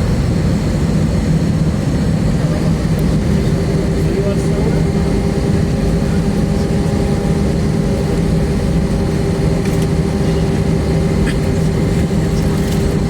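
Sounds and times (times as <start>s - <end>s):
cabin air system drone: 0.0s - 13.0s
jet engines idling: 0.0s - 13.0s.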